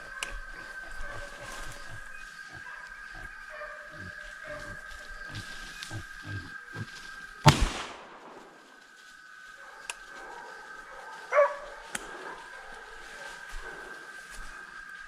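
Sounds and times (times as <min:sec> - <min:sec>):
loud gunshot: 0:07.4 - 0:08.6.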